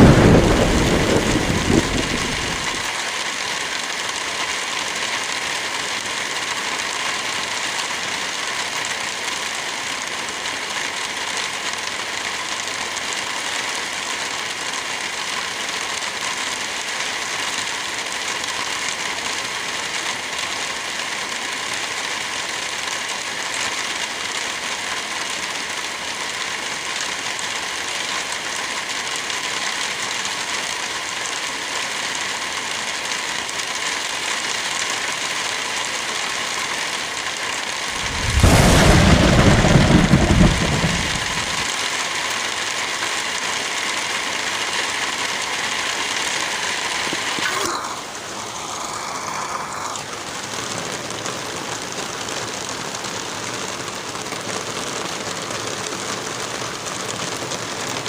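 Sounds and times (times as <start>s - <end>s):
wind through trees: 0.0s - 3.2s, 37.9s - 41.7s
light rain falling: 0.0s - 58.0s.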